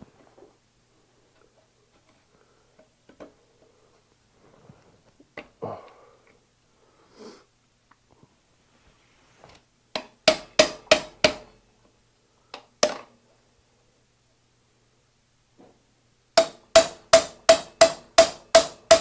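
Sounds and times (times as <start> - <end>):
hammer striking metal: 10.0 - 11.6, 16.4 - 19.0.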